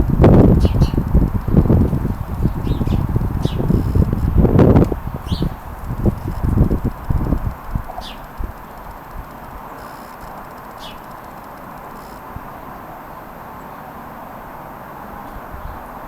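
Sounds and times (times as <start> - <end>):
strong wind blowing: 0.0 - 9.7
bird chirping: 0.4 - 12.8.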